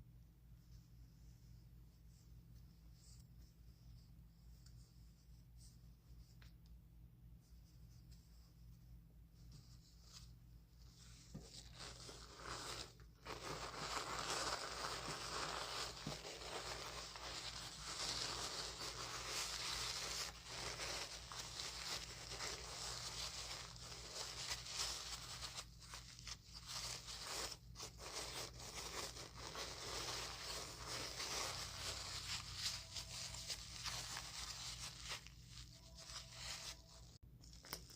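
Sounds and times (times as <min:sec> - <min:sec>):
plastic wrap crinkling: 0:11.4 - 0:37.9.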